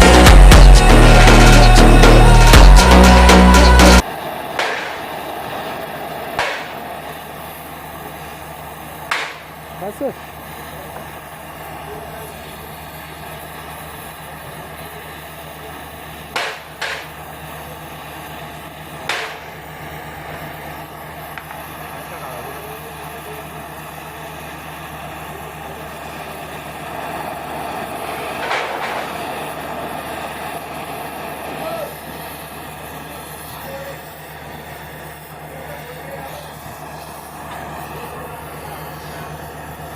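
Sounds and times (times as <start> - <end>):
steady machine hum: 0.0 - 39.9
sharp metallic knocks: 4.6 - 5.1, 6.4 - 6.8, 9.1 - 9.5, 16.4 - 17.2, 19.1 - 19.4.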